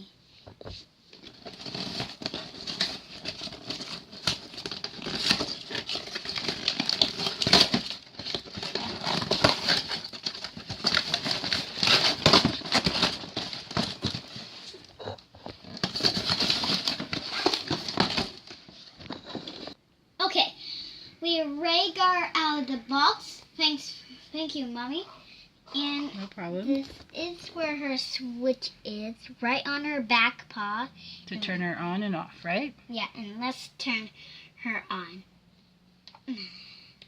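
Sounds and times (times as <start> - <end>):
packaging rustling and crinkling: 0.6 - 19.8.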